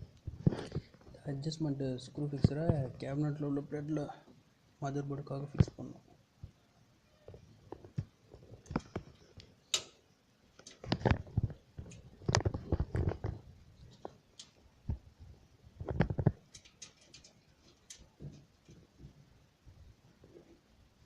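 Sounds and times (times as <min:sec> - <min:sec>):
knocking and scraping on metal: 0:15.8 - 0:19.2.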